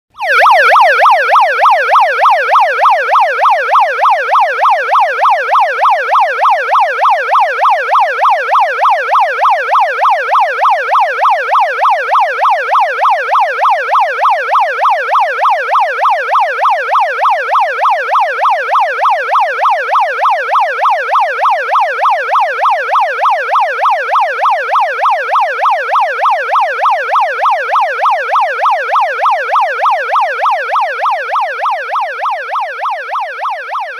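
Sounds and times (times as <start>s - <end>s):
megaphone electronic siren: 0.1s - 33.9s.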